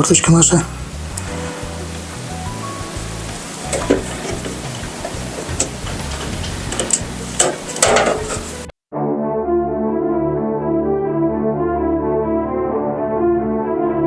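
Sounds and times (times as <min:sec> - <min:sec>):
steady hiss: 0:00.0 - 0:08.7
brass music: 0:00.6 - 0:14.0.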